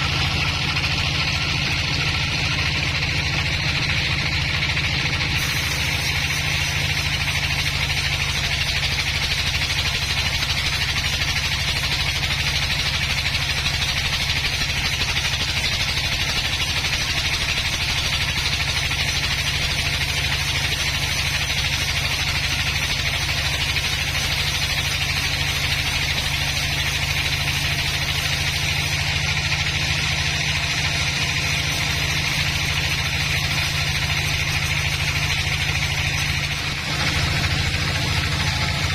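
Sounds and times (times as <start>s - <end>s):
engine deep hum: 0.0s - 12.7s, 23.3s - 38.9s.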